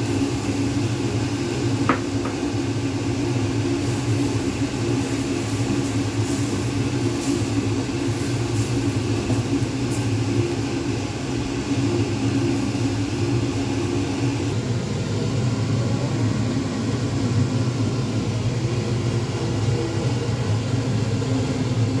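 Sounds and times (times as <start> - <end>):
hiss: 3.1 - 14.5.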